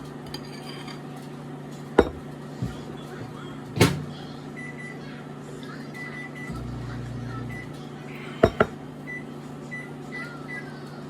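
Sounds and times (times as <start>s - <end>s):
steady low hum: 2.0s - 10.1s.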